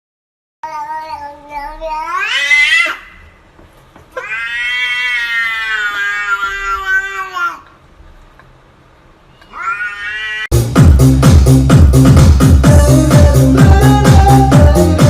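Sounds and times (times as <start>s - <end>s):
cat yowling: 2.0s - 3.2s, 4.2s - 7.6s, 9.4s - 10.5s.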